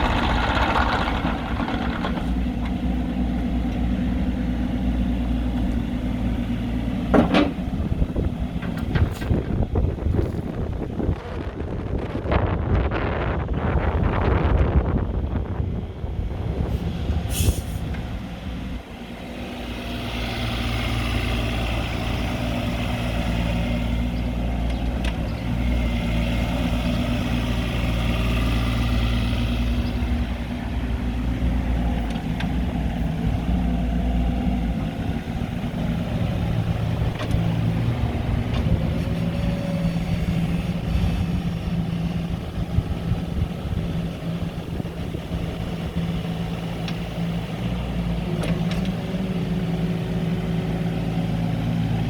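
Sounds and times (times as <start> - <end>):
diesel engine running: 0.0 - 52.0.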